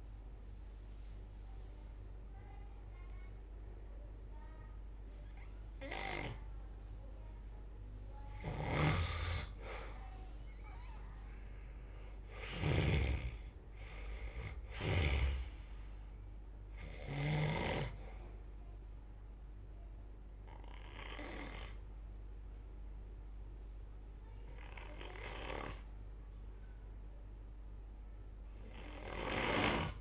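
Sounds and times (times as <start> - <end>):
steady low hum: 0.0 - 30.0
person snoring: 8.4 - 9.9, 12.3 - 15.7, 16.8 - 18.0, 28.6 - 30.0.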